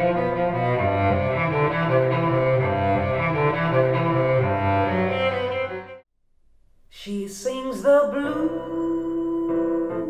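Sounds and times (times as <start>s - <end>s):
bowed strings with cello: 0.0s - 6.0s.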